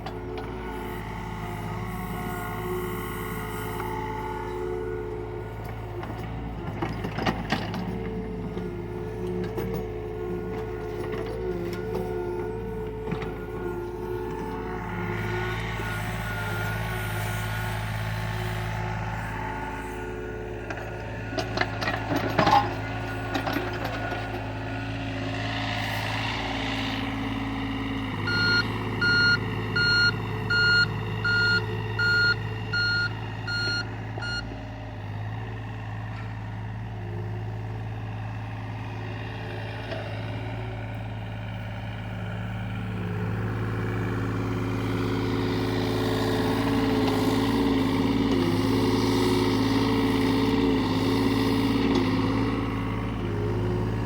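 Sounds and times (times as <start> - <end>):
diesel excavator engine running: 0.0 - 54.0
travel alarm beeps: 28.3 - 34.4.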